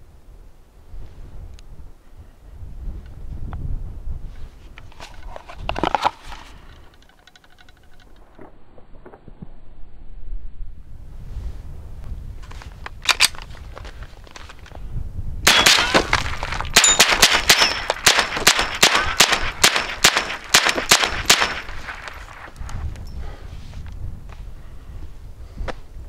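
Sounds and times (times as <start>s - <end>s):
rifle shots: 15.4s - 22.4s
metallic pings: 16.8s - 18.0s.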